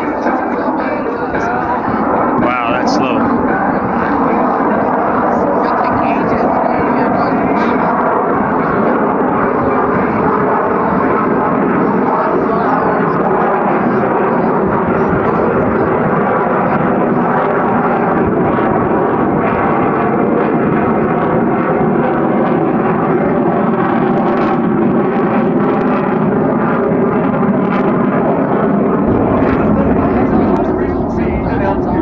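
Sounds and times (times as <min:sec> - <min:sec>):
jet engines running loud: 0:00.0 - 0:32.0.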